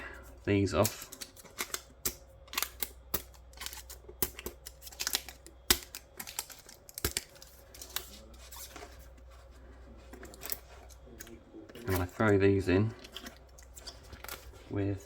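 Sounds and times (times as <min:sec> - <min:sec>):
plastic parts clicking and snapping: 0:00.7 - 0:08.2.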